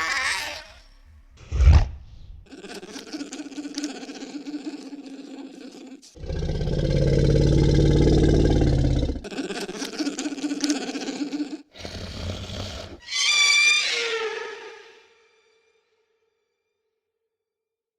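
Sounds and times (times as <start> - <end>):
creature rattling chatter: 2.5 - 11.6
loud low creature growl: 4.9 - 9.5.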